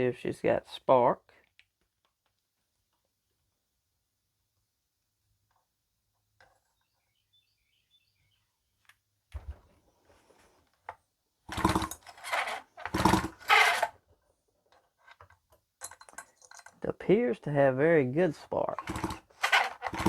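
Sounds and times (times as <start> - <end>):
chainsaw recoil starter pulled: 11.5 - 14.0, 18.7 - 20.0
engine spinning over: 18.8 - 20.0.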